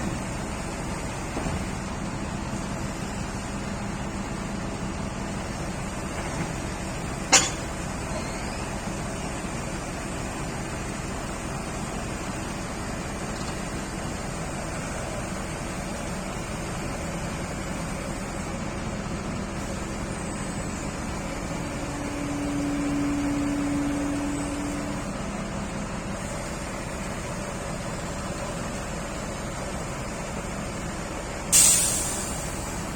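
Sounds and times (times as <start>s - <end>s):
heavy diesel machinery running: 0.0s - 32.9s
sharp metallic knock: 7.3s - 7.8s
rain hiss: 31.5s - 32.8s.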